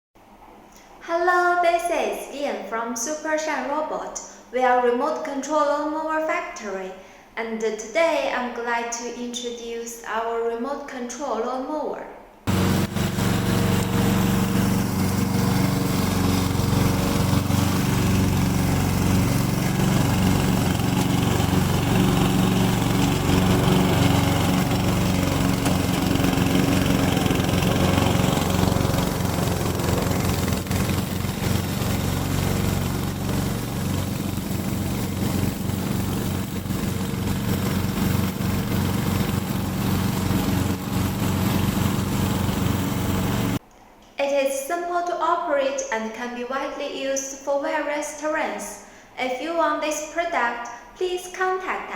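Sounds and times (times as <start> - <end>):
lawn mower engine running: 12.5 - 43.6.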